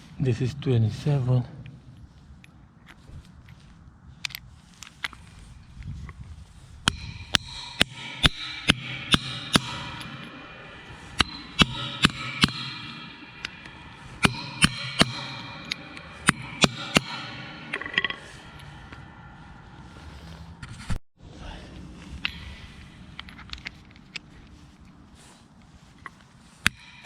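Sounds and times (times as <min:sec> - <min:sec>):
hammer striking metal: 0:06.9 - 0:20.6, 0:22.2 - 0:23.6, 0:26.6 - 0:27.0.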